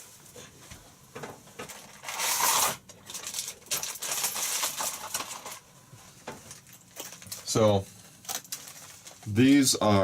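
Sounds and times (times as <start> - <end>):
packaging rustling: 1.8 - 5.6, 6.5 - 9.4.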